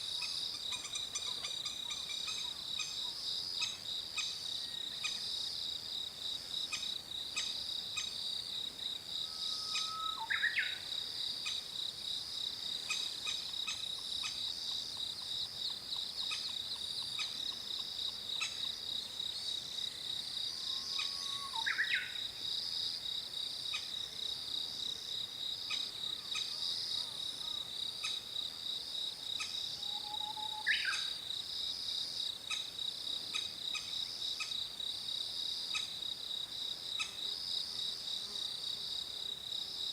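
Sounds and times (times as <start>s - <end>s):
pulsing insect trill: 6.7s - 11.6s, 12.9s - 22.3s.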